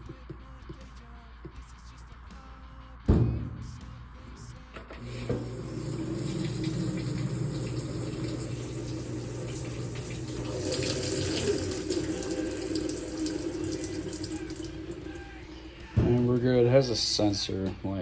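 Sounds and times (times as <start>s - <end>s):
water rushing into washing machine: 5.0s - 16.2s.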